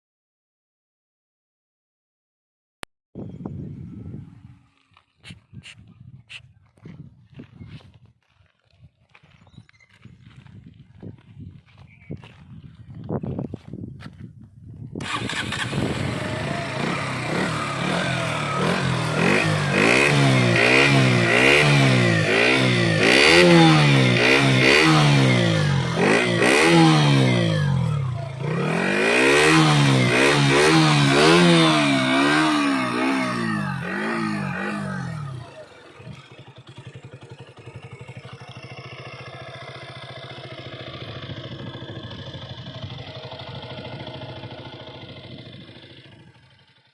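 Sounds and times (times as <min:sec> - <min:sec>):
motorcycle engine revving: 0:15.0 - 0:46.9.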